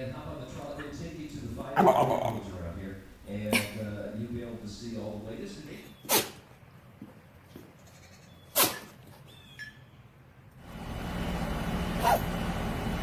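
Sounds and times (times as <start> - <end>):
animal sneezing: 6.0 - 6.5, 8.5 - 9.0, 12.0 - 12.4.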